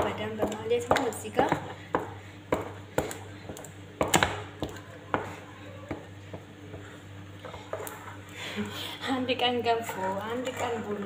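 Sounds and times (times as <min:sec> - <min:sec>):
utensil scraping cooking pot: 0:09.6 - 0:11.0.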